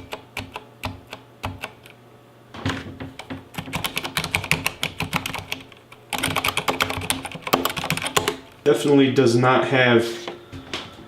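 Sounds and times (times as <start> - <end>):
typing on mechanical keyboard: 3.6 - 8.4.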